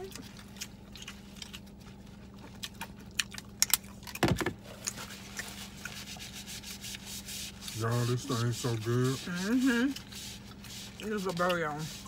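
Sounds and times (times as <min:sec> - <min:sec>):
wet chewing and mouth smacks: 0:00.0 - 0:06.1.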